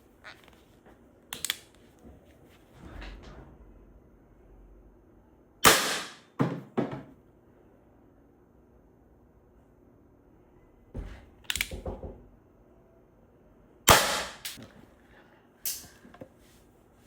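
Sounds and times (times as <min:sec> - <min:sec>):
mechanical clicks: 0:01.4 - 0:01.7
air pistol shot: 0:05.6 - 0:06.3, 0:13.9 - 0:14.6.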